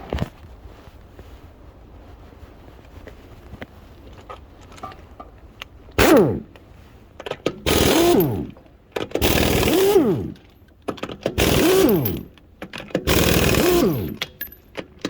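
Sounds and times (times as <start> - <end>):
impact wrench rattling: 6.0 - 6.6, 7.2 - 15.0.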